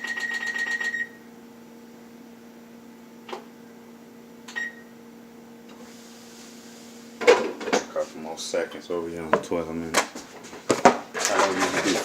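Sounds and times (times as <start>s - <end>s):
kitchen appliance humming: 0.0s - 12.0s.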